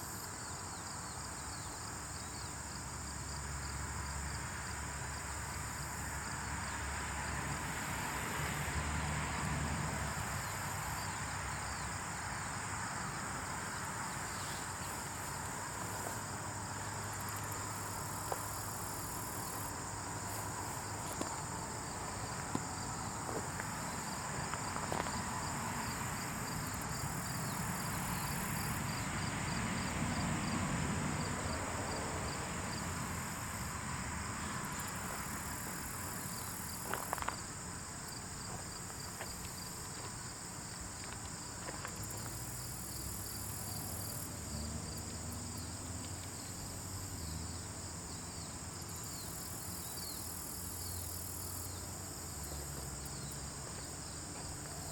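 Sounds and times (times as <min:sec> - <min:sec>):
high insect-like whine: 0:09.9 - 0:30.5, 0:38.1 - 0:54.9.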